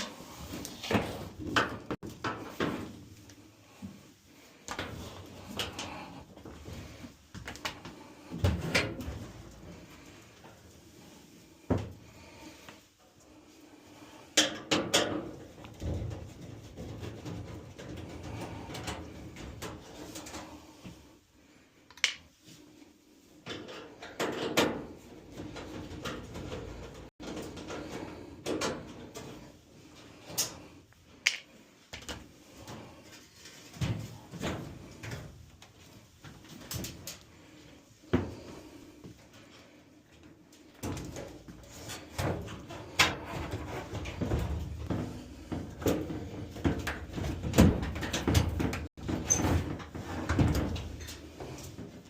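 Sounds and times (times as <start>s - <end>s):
sheet metal clunks and scrapes: 40.8s - 52.0s.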